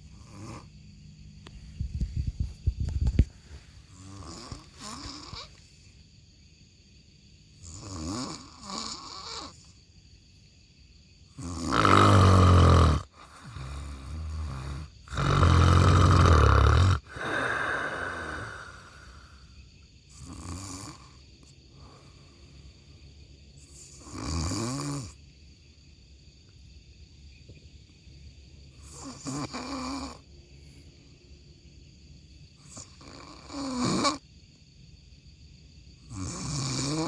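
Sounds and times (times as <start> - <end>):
person snoring: 0.2 - 0.7, 3.9 - 5.6, 7.6 - 9.5, 11.4 - 19.4, 36.1 - 37.0
person breathing: 17.0 - 19.6.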